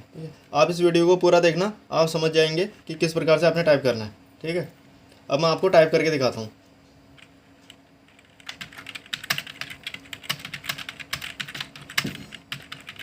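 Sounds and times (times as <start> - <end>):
keyboard typing clicks: 7.2 - 13.0.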